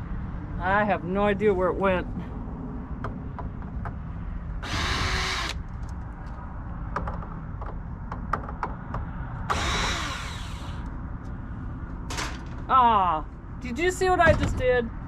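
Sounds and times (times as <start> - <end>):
power screwdriver running: 4.6 - 5.6, 9.5 - 10.9.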